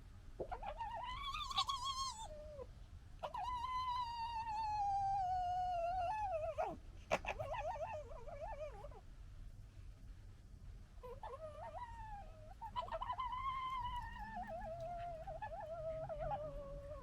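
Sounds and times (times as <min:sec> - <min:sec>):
fox cubs whining: 0:00.4 - 0:09.0, 0:11.0 - 0:17.0
fox cub stuttering chatter: 0:12.6 - 0:17.0.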